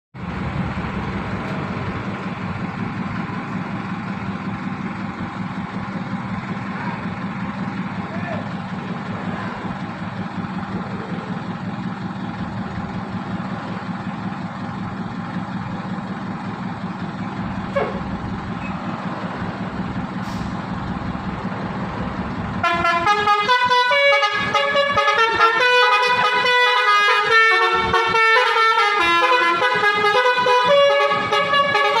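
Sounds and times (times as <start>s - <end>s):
bus engine idling: 0.2s - 32.0s
musical bus horn tune: 22.6s - 32.0s.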